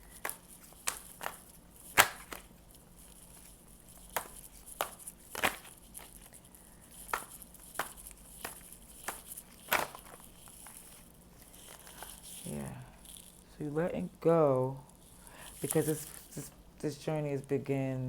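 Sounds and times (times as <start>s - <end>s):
cards tapping and flicking: 0.0s - 12.5s, 15.3s - 16.4s.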